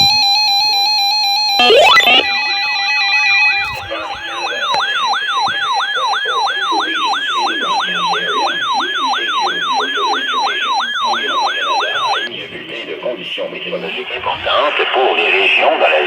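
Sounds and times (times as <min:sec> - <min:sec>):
electronic siren-like alert tone: 0:00.0 - 0:12.3.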